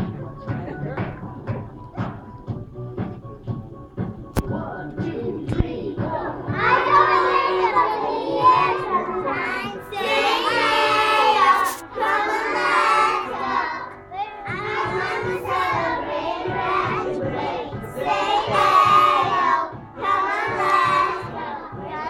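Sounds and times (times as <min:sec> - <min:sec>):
music with steady beat: 0:00.0 - 0:22.0
children singing together: 0:05.4 - 0:22.0.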